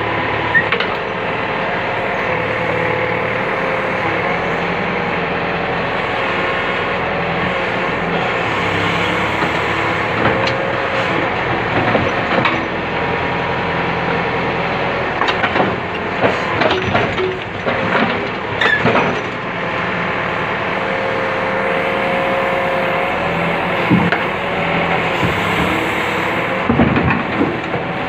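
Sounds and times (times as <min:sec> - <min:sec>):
heavy diesel machinery running: 0:00.0 - 0:28.0
metal clanks and knocks: 0:15.2 - 0:19.4, 0:26.6 - 0:27.9.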